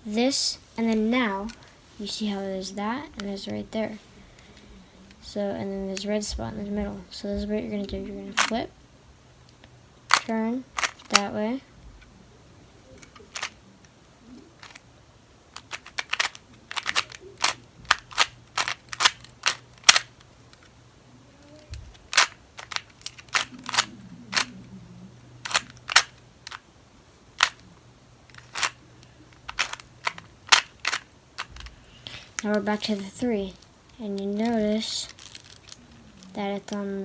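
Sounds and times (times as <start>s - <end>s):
puzzle cube clicking: 8.4s - 8.6s, 9.5s - 11.4s, 12.9s - 13.6s, 14.3s - 14.9s, 15.5s - 20.7s, 21.4s - 24.8s, 25.4s - 26.7s, 27.3s - 33.3s, 33.9s - 36.8s.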